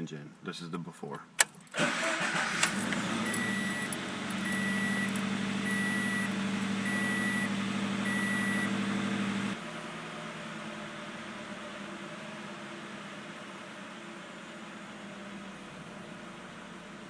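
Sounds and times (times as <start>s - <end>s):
car engine running: 1.8s - 17.0s
short high beeps: 3.2s - 5.1s.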